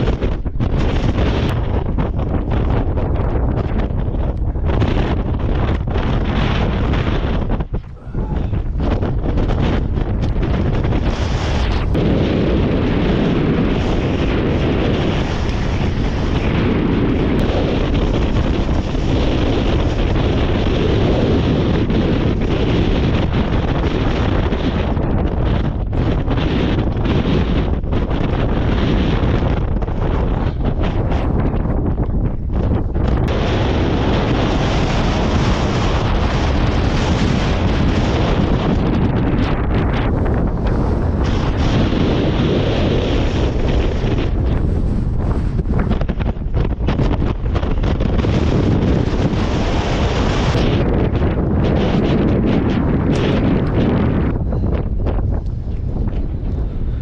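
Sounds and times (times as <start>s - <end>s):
wind buffeting microphone: 0.0s - 57.0s.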